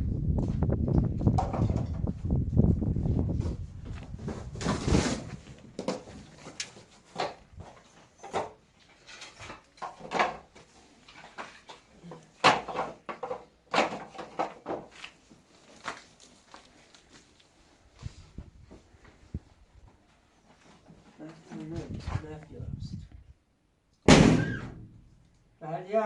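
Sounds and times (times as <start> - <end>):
low rumble: 0.0 - 4.3
objects knocking and clattering: 1.2 - 2.2, 5.7 - 15.0.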